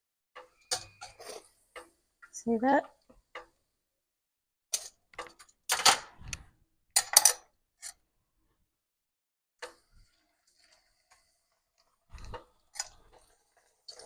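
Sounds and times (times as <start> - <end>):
bread deep-frying in hot oil: 9.6 - 14.0.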